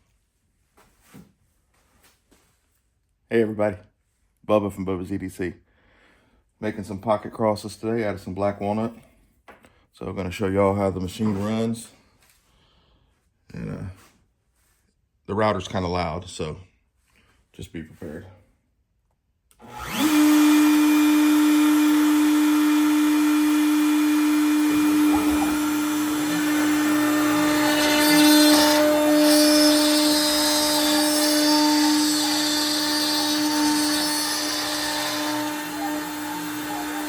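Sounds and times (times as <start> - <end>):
router milling wood: 19.6 - 37.0.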